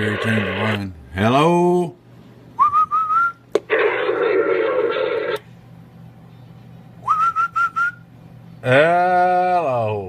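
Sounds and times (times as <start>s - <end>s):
radio hiss burst: 0.0s - 0.8s, 3.7s - 5.4s.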